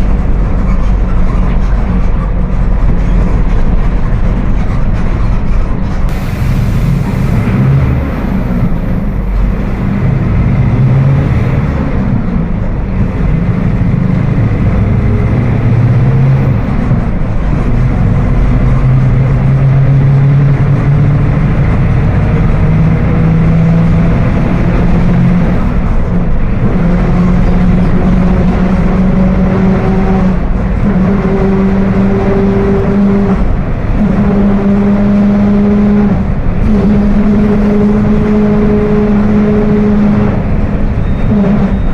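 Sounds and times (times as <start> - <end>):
bus differential growling: 0.0 - 41.9.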